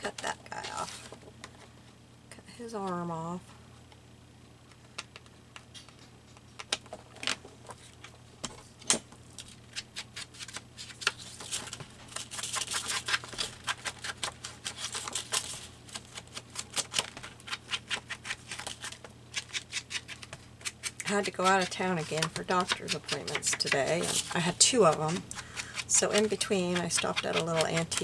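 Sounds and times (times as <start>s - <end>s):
paper rustle: 9.4s - 28.0s
scissors snipping paper: 9.8s - 28.0s.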